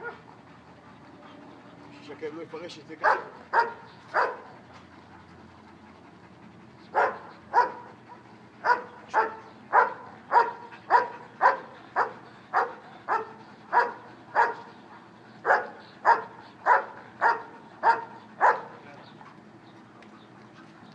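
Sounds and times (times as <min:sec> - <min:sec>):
dog barking: 0:00.0 - 0:00.2, 0:03.0 - 0:04.6, 0:06.9 - 0:07.9, 0:08.6 - 0:14.7, 0:15.4 - 0:18.8.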